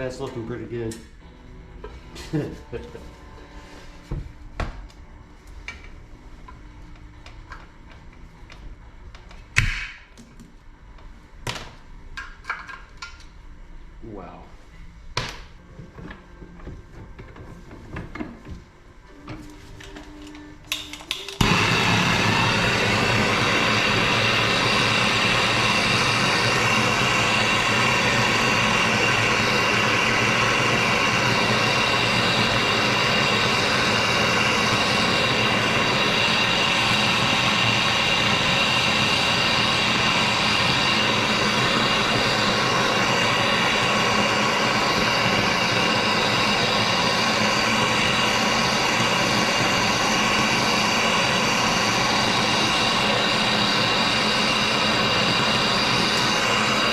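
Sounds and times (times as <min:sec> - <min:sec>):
steady hum: 0:13.2 - 0:56.9
high whine: 0:19.0 - 0:56.9
blasting cabinet hissing: 0:21.4 - 0:56.9.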